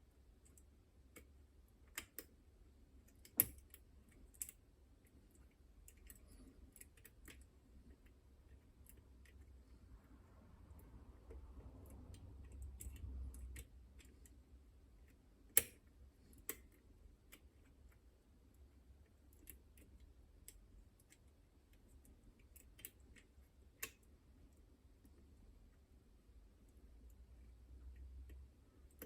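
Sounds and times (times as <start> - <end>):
lock picks clicking in lock: 3.1 - 4.6.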